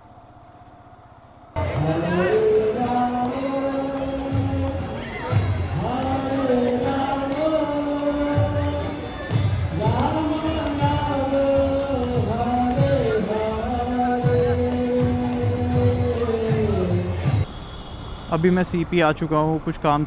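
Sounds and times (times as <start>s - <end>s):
low repeating beat: 1.6s - 17.4s
person singing slow melody: 1.6s - 17.4s.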